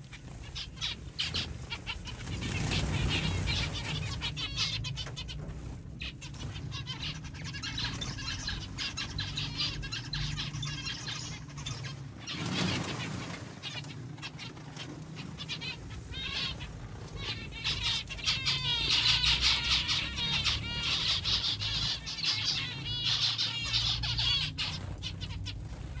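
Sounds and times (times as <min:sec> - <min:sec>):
finches chirping: 0:00.0 - 0:26.0
low steady hum: 0:00.0 - 0:26.0
wing flutters: 0:00.0 - 0:26.0.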